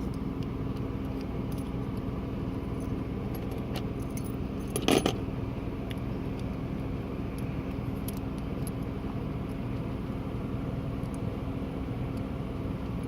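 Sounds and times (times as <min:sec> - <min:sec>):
steady low hum: 0:00.0 - 0:13.0
metal clatter: 0:02.8 - 0:05.2.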